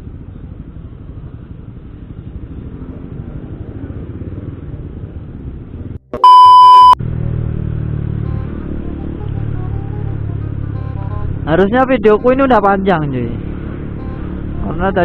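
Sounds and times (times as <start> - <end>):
motorcycle engine rumble: 0.0 - 6.1, 7.0 - 15.0
electronic beep: 6.2 - 7.0.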